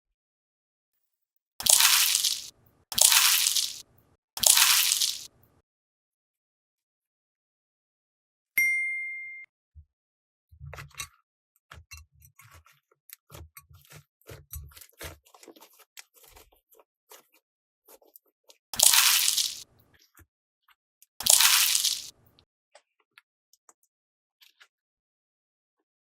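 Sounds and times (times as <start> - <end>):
loud squishy burst: 1.6 - 3.8, 4.4 - 5.3, 18.8 - 19.6, 21.2 - 22.1
bright ding: 8.6 - 9.5.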